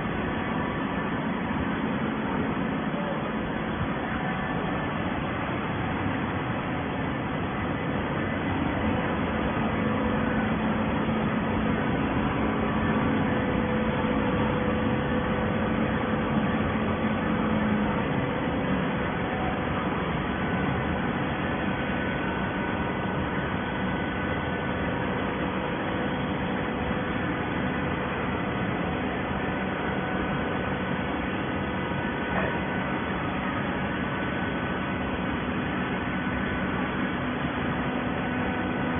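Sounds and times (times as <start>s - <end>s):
baler machine humming and hissing: 0.0s - 38.9s.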